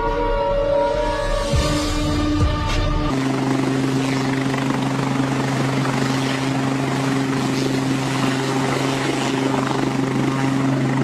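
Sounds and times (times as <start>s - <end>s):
music: 0.0s - 4.6s
helicopter engine hum: 0.0s - 11.0s
rotor and wind rushing: 1.4s - 11.0s.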